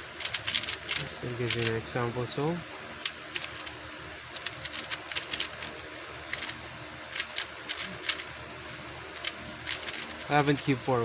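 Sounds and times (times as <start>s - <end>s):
puzzle cube plastic clicks: 0.2s - 1.7s, 3.3s - 3.7s, 4.4s - 6.6s, 7.2s - 8.3s, 9.2s - 10.5s.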